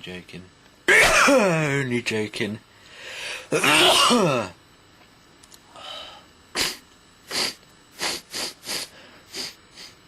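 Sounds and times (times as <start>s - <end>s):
man sneezing: 0.9s - 1.7s, 3.4s - 4.6s, 6.5s - 10.0s.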